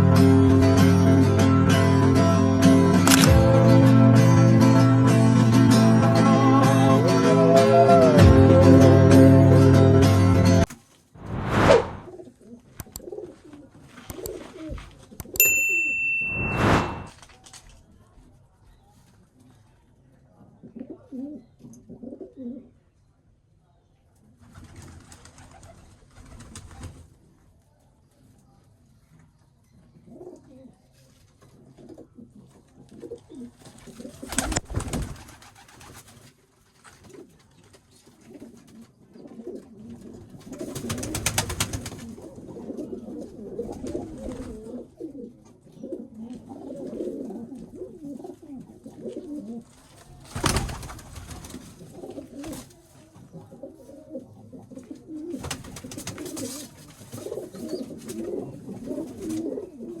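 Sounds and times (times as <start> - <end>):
pigeons cooing: 20.6 - 22.8, 38.2 - 49.8, 51.7 - 60.0.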